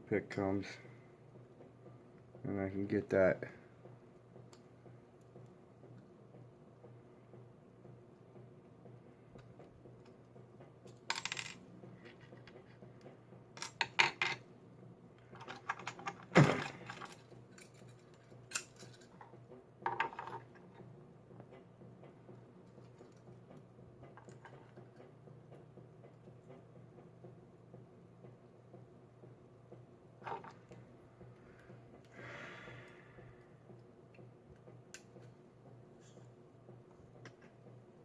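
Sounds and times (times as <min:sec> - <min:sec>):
lock parts clinking and rattling: 0:13.6 - 0:14.5, 0:15.3 - 0:19.2.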